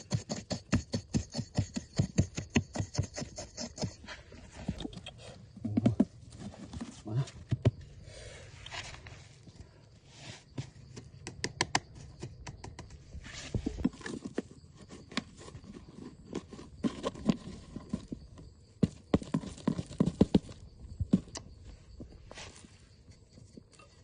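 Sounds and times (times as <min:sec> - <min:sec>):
sharp knocks and clicks: 0:10.9 - 0:13.0.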